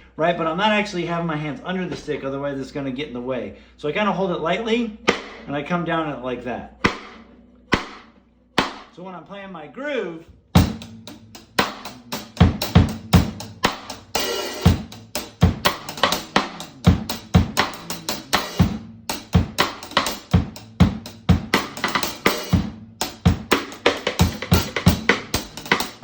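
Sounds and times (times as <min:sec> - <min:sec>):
kick drum: 0:06.8 - 0:08.9, 0:10.6 - 0:10.9, 0:12.4 - 0:13.8, 0:14.7 - 0:15.8, 0:16.9 - 0:17.7, 0:19.4 - 0:19.7, 0:20.3 - 0:21.6, 0:22.6 - 0:23.6.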